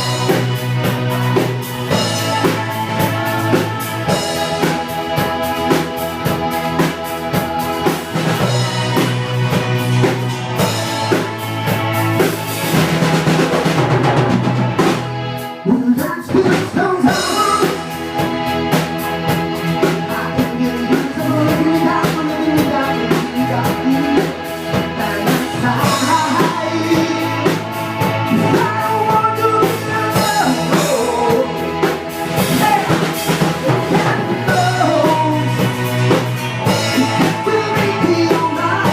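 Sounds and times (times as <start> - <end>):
band music: 0.0 - 38.9
drum kit: 0.0 - 38.9.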